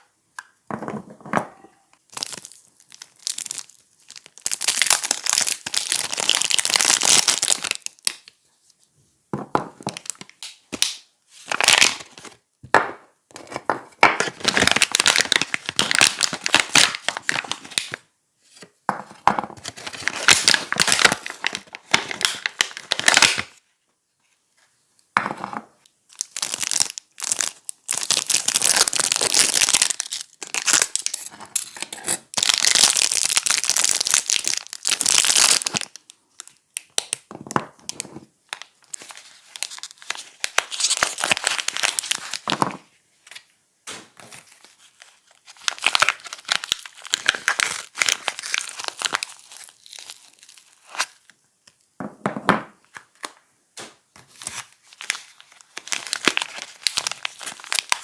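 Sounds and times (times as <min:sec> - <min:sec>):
wrapping tearing and crinkling: 0:02.0 - 0:08.4, 0:14.2 - 0:18.6, 0:19.6 - 0:23.6, 0:26.1 - 0:42.6, 0:44.2 - 0:51.3, 0:54.2 - 0:58.0.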